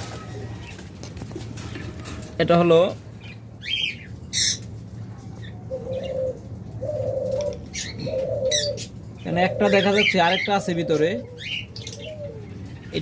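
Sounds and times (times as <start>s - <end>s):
cage birds chirping: 0.0s - 13.0s
dove cooing: 5.3s - 13.0s.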